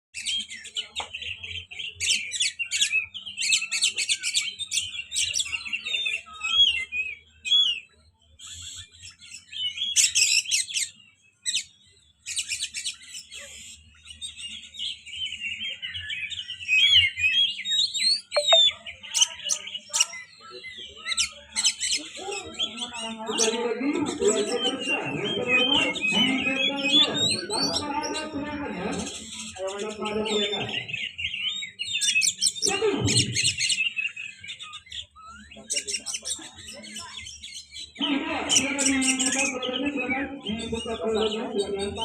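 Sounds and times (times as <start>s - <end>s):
bird singing chirps and trills: 0.2s - 42.0s.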